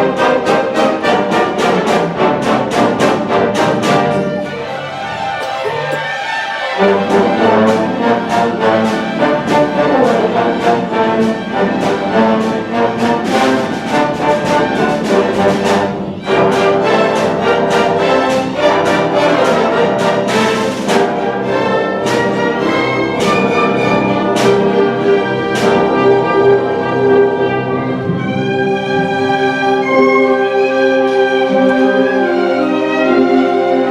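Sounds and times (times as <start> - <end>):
symphony orchestra with brass: 0.0 - 33.9
sharp percussive strikes: 0.2 - 26.9.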